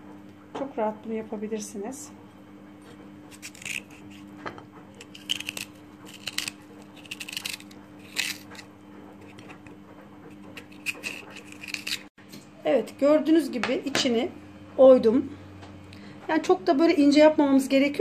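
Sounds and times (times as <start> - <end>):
corer scraping radish: 3.2 - 9.7, 10.3 - 12.1.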